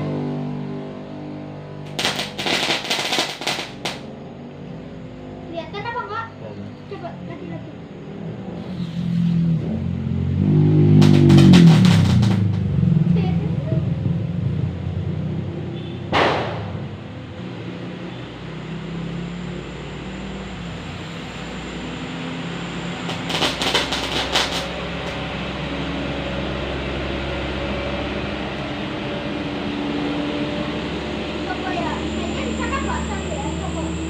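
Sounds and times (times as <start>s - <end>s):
firecracker bang: 1.8s - 4.1s, 10.8s - 13.0s, 16.0s - 17.0s, 23.0s - 25.3s
crackling firecracker pops: 1.8s - 4.2s, 10.9s - 12.8s, 16.1s - 16.8s, 23.0s - 25.3s
steady low rumble: 11.0s - 15.6s.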